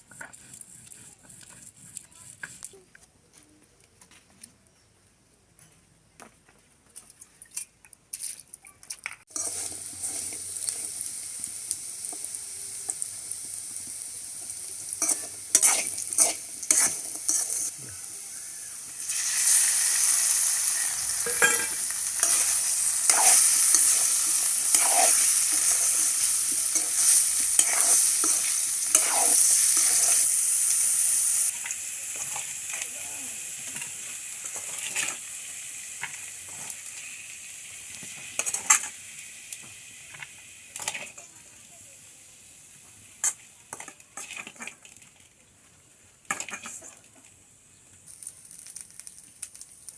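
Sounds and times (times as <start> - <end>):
spatula scraping pan: 0.0 - 2.7, 14.4 - 17.8, 19.1 - 30.6
food sizzling in oil: 9.3 - 45.2, 46.2 - 47.0, 48.1 - 49.9.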